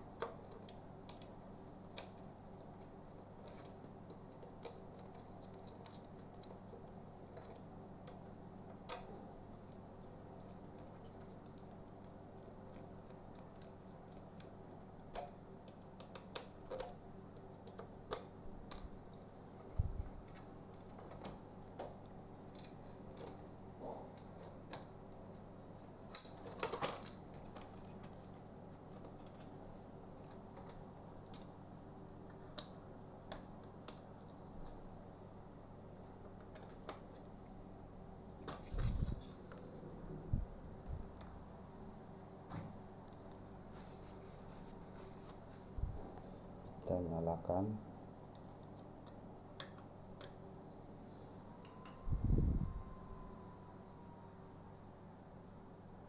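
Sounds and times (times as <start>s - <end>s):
small clicks and taps of laptop parts: 0.2s - 19.7s, 48.3s - 50.4s.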